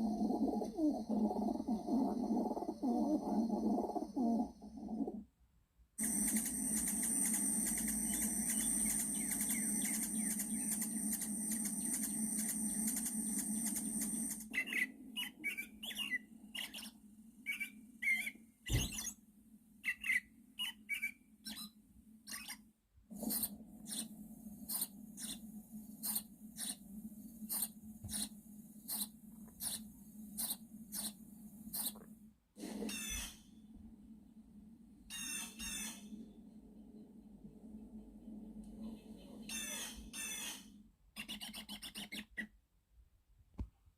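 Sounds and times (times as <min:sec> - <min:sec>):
sharp clicks: 0:06.0 - 0:14.5
steady hum: 0:06.0 - 0:19.8, 0:23.1 - 0:32.3, 0:33.6 - 0:39.4
animal chirps and squeaks: 0:08.1 - 0:19.2, 0:19.8 - 0:22.6, 0:39.5 - 0:42.5.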